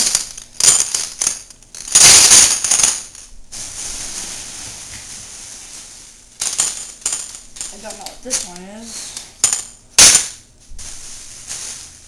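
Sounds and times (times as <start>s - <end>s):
plastic dominoes clattering: 0.0s - 3.3s, 6.4s - 10.4s.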